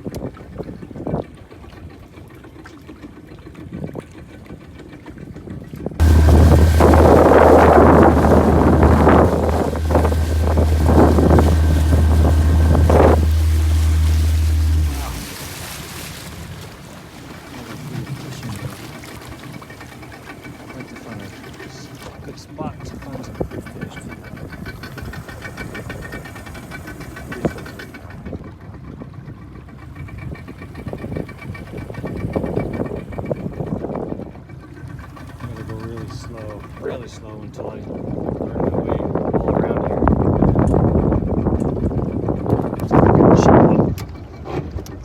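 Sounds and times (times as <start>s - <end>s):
boat engine drone: 1.6s - 45.0s
gusts of wind: 6.0s - 16.8s, 30.0s - 34.4s
water rushing: 6.0s - 28.5s, 34.9s - 37.2s.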